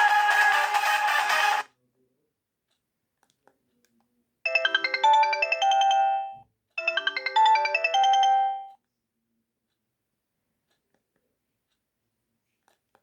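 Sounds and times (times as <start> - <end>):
mobile phone ringtone melody: 4.5 - 8.8.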